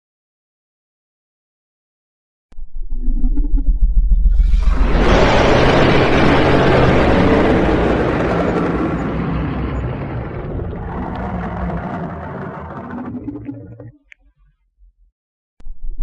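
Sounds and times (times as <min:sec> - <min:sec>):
deep rumble: 0:02.6 - 0:14.2
harsh noisy dragon roar: 0:04.6 - 0:13.8.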